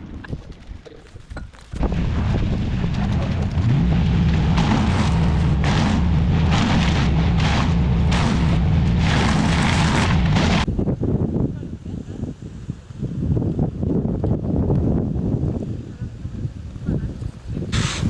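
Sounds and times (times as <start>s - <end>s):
branches crackling in chipper: 0.3s - 10.7s
wood chipper engine revving: 1.8s - 10.7s.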